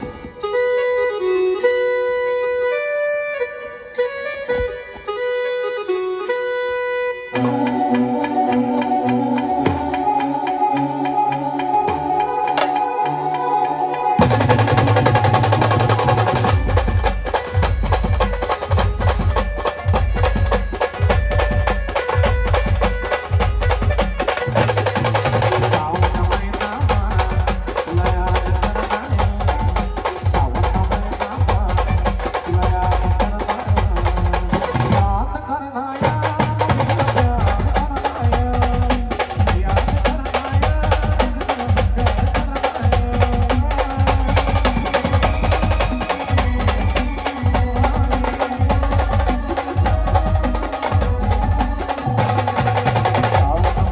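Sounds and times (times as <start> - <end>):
clacking percussion: 7.4 - 35.2, 36.0 - 53.9
pounding bass drum beat: 14.2 - 35.2, 36.0 - 53.9.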